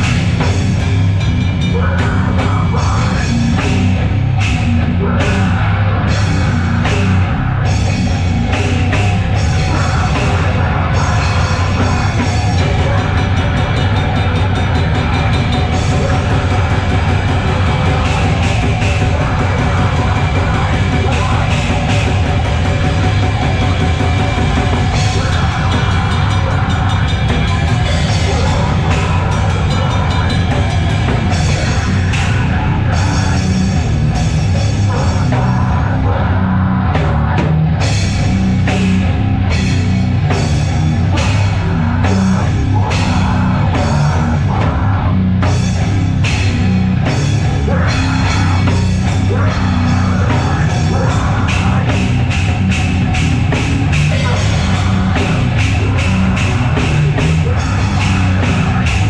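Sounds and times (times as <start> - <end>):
heavy metal band playing: 0.0 - 59.0
fast drum hits: 7.8 - 34.8, 45.5 - 59.0.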